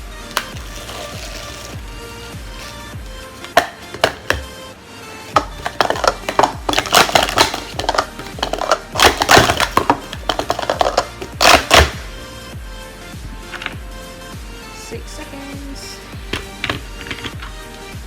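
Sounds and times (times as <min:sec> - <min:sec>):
plastic cups clattering: 0:00.0 - 0:12.2, 0:13.4 - 0:13.8, 0:16.2 - 0:17.6.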